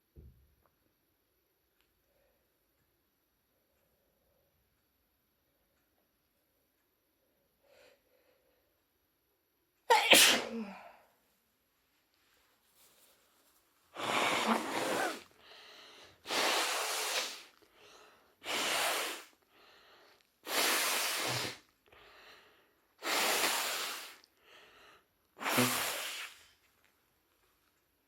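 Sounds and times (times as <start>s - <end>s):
woman sneezing: 9.9s - 10.9s, 14.0s - 15.3s.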